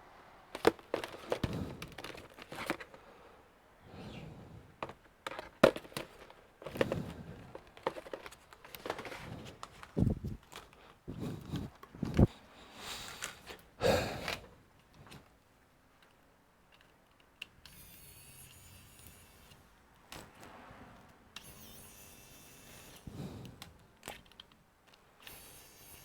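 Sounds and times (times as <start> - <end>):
plastic and metal clicks: 0.5 - 3.0, 4.8 - 12.3.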